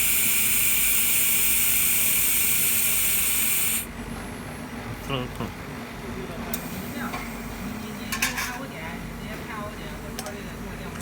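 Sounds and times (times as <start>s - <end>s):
laser welder hissing: 0.0s - 3.9s.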